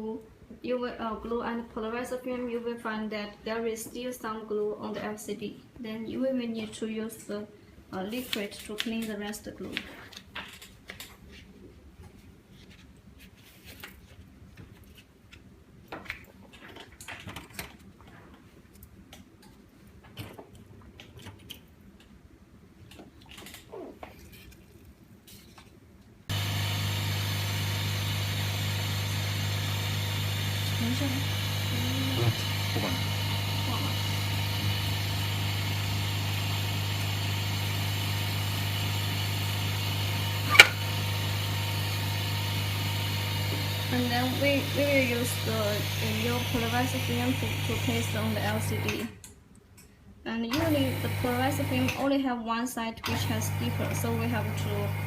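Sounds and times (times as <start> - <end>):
vacuum pump humming: 26.3 - 49.1, 50.6 - 52.1, 53.0 - 55.0.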